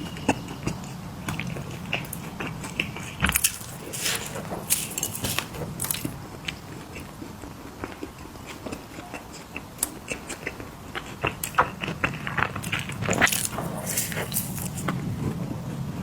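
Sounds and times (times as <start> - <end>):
chewing crunchy cookies: 0.0 - 16.0.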